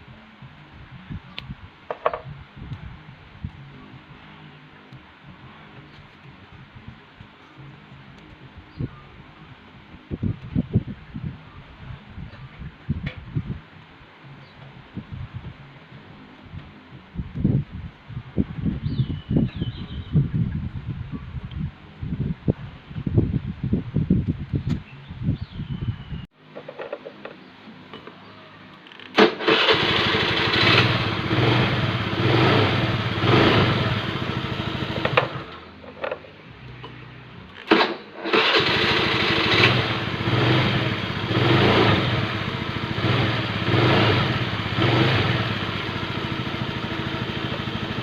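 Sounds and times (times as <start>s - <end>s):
scooter engine running: 29.4s - 35.7s, 37.7s - 48.0s.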